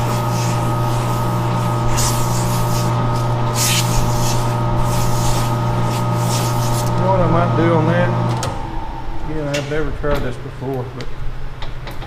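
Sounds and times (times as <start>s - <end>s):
sandpaper rasping on spinning shaft: 0.0s - 7.2s
metal lathe humming: 0.0s - 10.1s.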